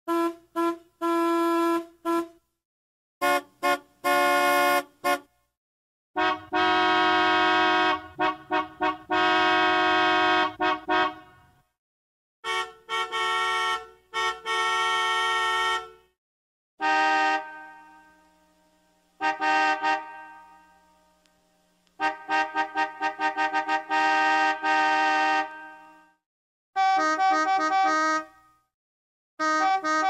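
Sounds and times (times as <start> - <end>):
car horn honks: 3.2 - 5.3, 6.2 - 11.6, 12.4 - 16.2, 16.8 - 18.6, 19.2 - 21.0, 22.0 - 26.1, 26.8 - 28.6, 29.4 - 30.0.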